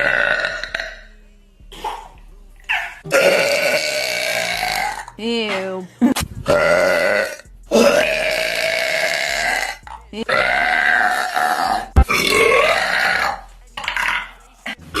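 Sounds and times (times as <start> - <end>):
woman belching: 0.0 - 1.1, 2.7 - 5.2, 6.5 - 14.3.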